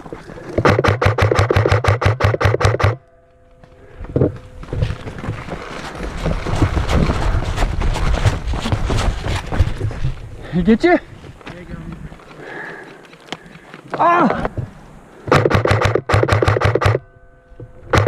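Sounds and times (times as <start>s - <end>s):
scuffing of movement: 3.6s - 10.3s.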